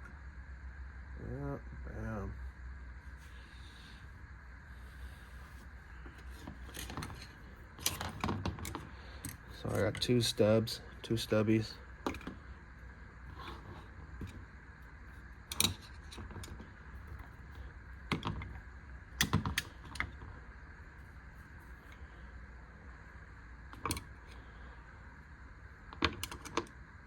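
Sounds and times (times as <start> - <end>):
steady low hum: 0.0 - 27.0
screwdrivers clicking and knocking: 6.2 - 10.2, 15.5 - 16.6, 19.2 - 20.2, 25.9 - 26.7.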